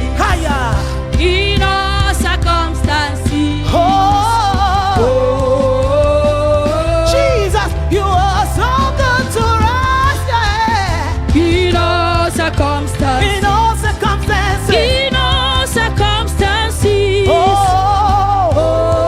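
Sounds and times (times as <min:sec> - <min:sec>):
bass line: 0:00.0 - 0:19.0
drums: 0:00.0 - 0:19.0.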